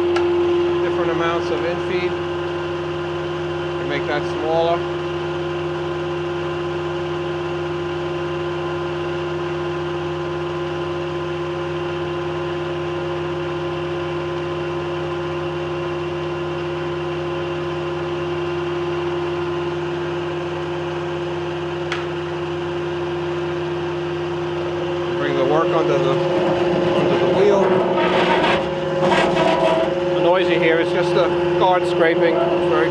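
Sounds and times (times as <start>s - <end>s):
grinder machine humming: 23.4s - 32.9s.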